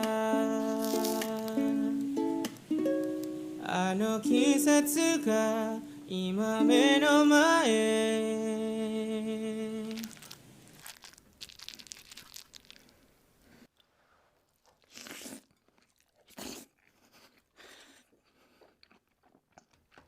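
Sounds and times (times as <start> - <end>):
crunching and chewing: 0.6 - 1.7, 9.7 - 13.1, 13.8 - 20.0.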